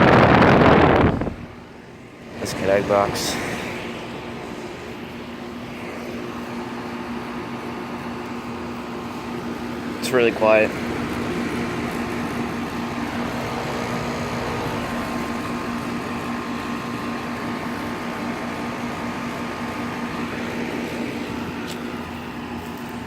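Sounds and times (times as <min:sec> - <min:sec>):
rush of air: 0:00.0 - 0:06.6
air conditioner hum: 0:00.0 - 0:23.0.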